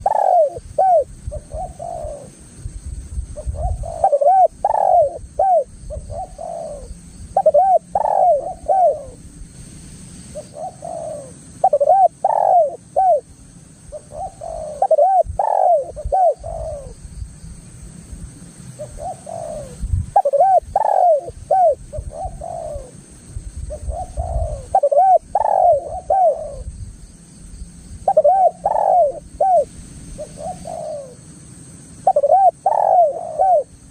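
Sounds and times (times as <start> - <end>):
dove cooing: 0.0 - 2.4, 3.4 - 9.2, 10.3 - 13.3, 13.9 - 17.0, 18.8 - 23.0, 23.7 - 26.7, 28.0 - 31.2, 32.0 - 33.9.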